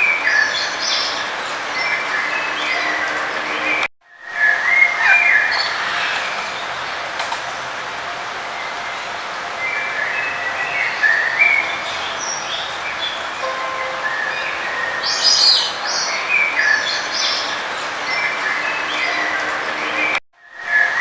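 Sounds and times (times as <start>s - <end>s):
songbirds chirping: 0.0s - 20.2s.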